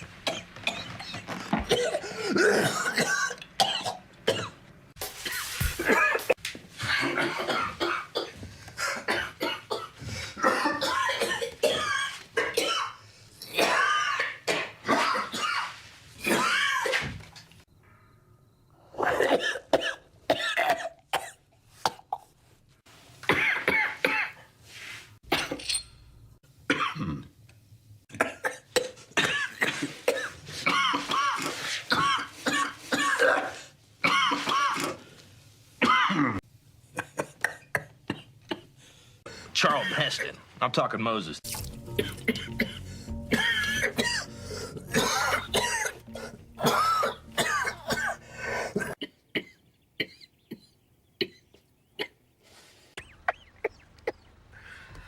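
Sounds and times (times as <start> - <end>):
man coughing: 1.7 - 4.6, 35.8 - 36.4, 39.6 - 40.4, 41.9 - 50.6.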